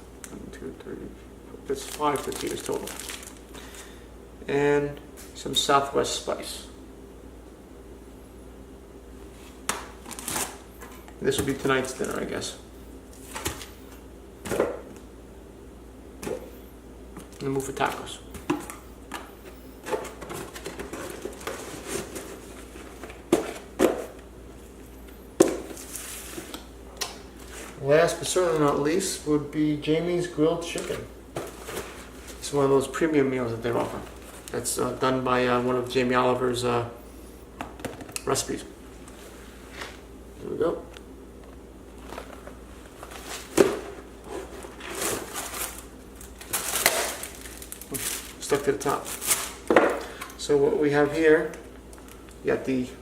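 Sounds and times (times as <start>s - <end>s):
crinkling plastic and paper: 1.7s - 3.8s, 44.3s - 49.7s.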